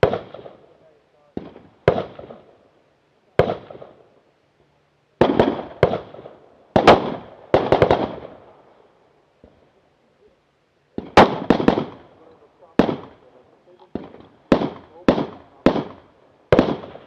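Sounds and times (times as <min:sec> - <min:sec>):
rifle shots with echo: 0:00.0 - 0:02.6, 0:03.4 - 0:04.2, 0:05.2 - 0:08.6, 0:10.9 - 0:17.0.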